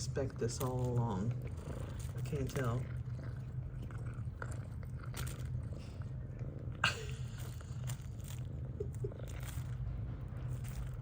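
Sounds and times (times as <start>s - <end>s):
cat purring: 0.0s - 11.0s.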